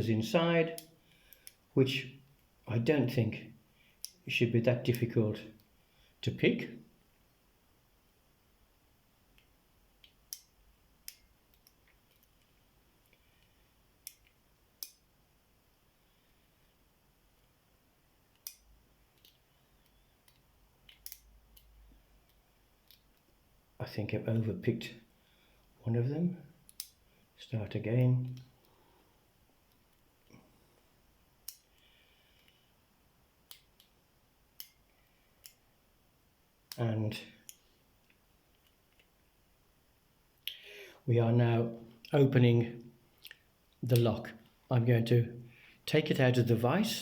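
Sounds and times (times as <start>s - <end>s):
lock pick metallic clicks: 9.4s - 13.2s, 14.0s - 15.0s, 18.3s - 23.3s, 26.6s - 27.0s, 34.6s - 34.8s.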